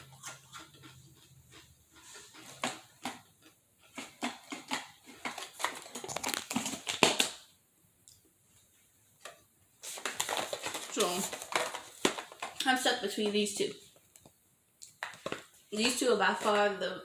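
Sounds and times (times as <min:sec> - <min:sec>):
crisps crunched and chewed: 0:00.0 - 0:07.4.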